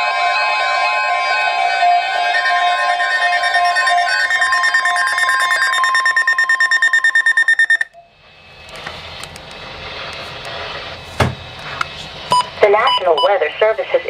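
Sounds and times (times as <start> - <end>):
weather radio alert tone: 2.2 - 7.9, 12.4 - 14.0.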